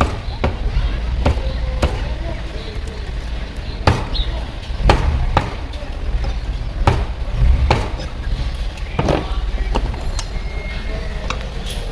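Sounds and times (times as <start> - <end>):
cleaver chopping through chicken: 0.0 - 2.3, 3.8 - 8.1
steady low rumble: 0.0 - 10.6.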